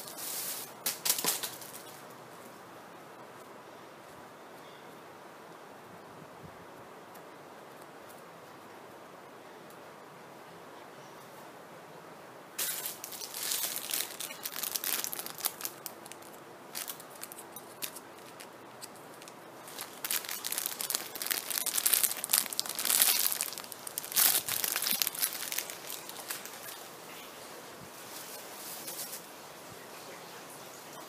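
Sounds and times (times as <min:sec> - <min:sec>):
plastic wrapping crinkling: 0:00.0 - 0:02.1, 0:12.6 - 0:26.9, 0:28.0 - 0:29.3.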